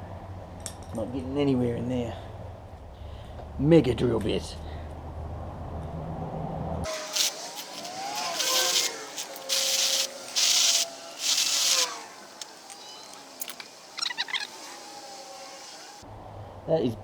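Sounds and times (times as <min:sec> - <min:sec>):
electric drill grinding: 0:06.9 - 0:16.0.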